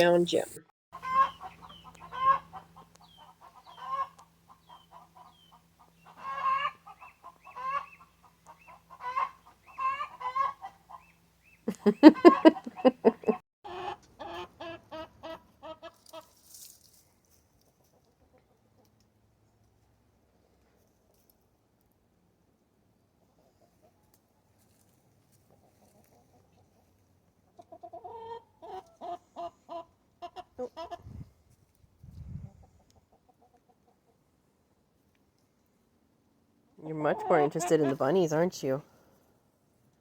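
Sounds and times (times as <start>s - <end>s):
chickens clucking: 1.0s - 16.3s, 25.5s - 31.3s, 32.4s - 34.3s, 36.9s - 38.8s.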